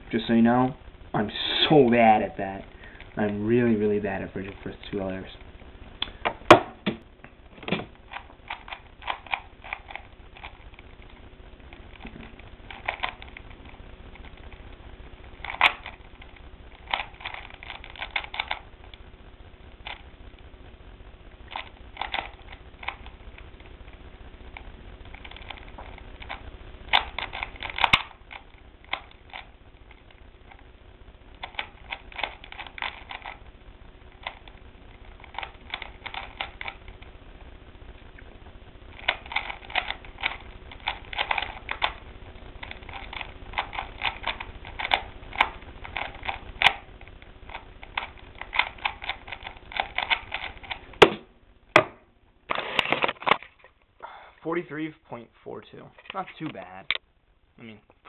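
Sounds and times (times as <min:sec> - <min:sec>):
plastic cube clicking: 0:08.1 - 0:10.6, 0:12.0 - 0:13.4, 0:15.4 - 0:16.0, 0:16.9 - 0:18.6, 0:21.5 - 0:23.1, 0:25.1 - 0:29.5, 0:31.4 - 0:33.4, 0:35.1 - 0:36.8, 0:39.0 - 0:42.0, 0:42.6 - 0:46.9, 0:47.5 - 0:51.0.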